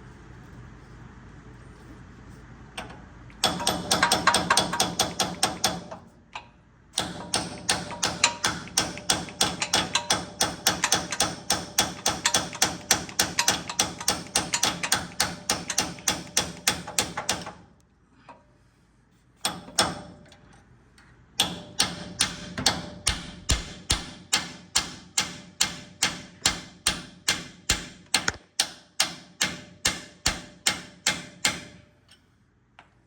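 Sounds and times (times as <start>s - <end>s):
hammer striking steel punch: 3.4s - 5.9s, 7.0s - 17.5s, 21.4s - 31.8s.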